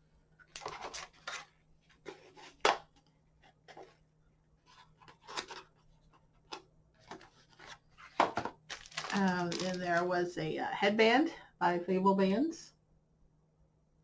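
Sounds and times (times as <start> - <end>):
hands handling craft items: 0.4 - 10.3.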